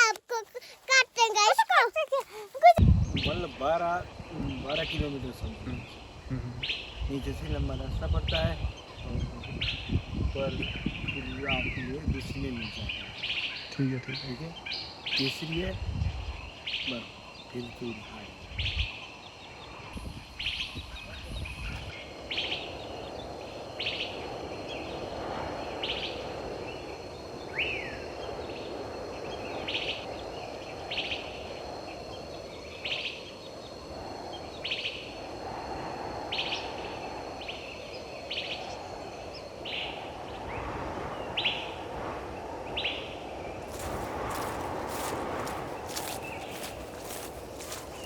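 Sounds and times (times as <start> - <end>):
steady background noise: 41.7 - 48.0.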